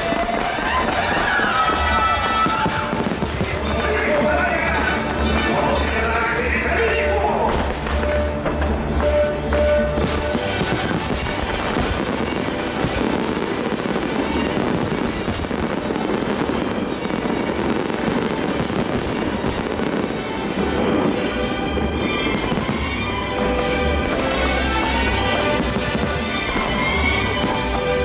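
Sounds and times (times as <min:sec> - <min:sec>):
fireworks crackles and pops: 0:00.0 - 0:28.0
show music: 0:00.0 - 0:28.0.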